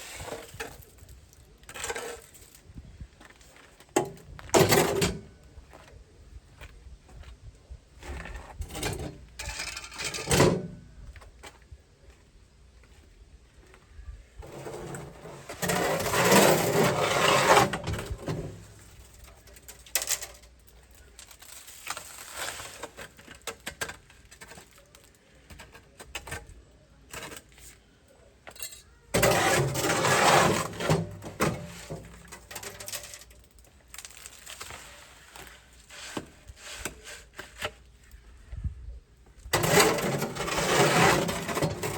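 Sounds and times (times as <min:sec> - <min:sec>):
tool scraping wet concrete: 0:00.0 - 0:02.6, 0:14.4 - 0:20.4, 0:21.0 - 0:27.7, 0:29.1 - 0:33.3, 0:34.0 - 0:37.9, 0:39.5 - 0:41.9.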